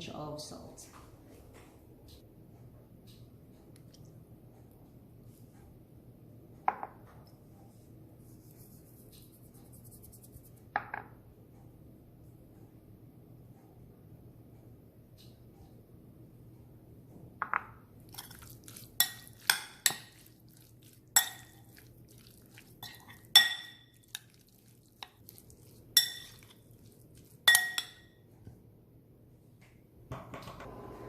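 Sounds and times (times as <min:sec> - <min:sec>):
kitchenware clinking: 0:17.4 - 0:20.3, 0:21.2 - 0:21.9, 0:22.6 - 0:24.4, 0:26.0 - 0:26.6, 0:27.4 - 0:28.2.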